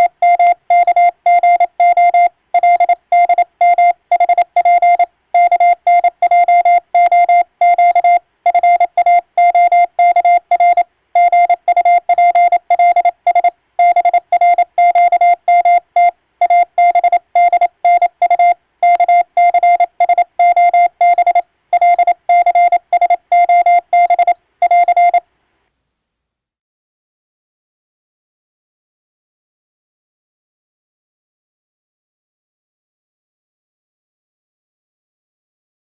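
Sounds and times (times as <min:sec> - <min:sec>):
morse code beeps: 0:00.0 - 0:25.2.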